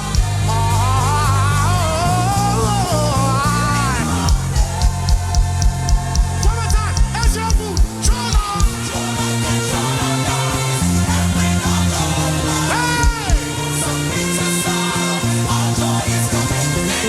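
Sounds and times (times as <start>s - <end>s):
sustained bass: 0.0s - 17.0s
kick drum beat: 4.3s - 8.9s, 13.0s - 13.4s.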